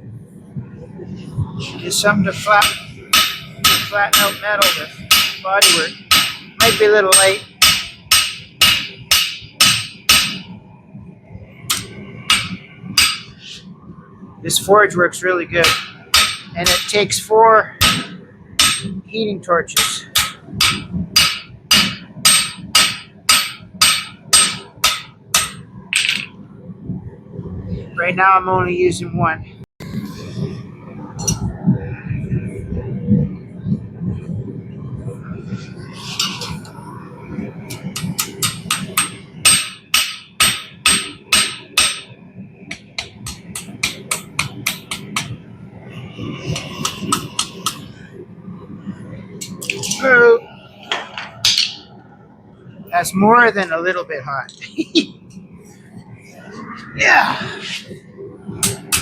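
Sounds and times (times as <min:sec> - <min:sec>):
hammer striking metal: 0:02.4 - 0:10.5, 0:11.7 - 0:13.5, 0:15.6 - 0:17.0, 0:17.8 - 0:19.0, 0:19.8 - 0:26.3, 0:37.7 - 0:45.4, 0:46.6 - 0:47.9, 0:58.6 - 0:59.0.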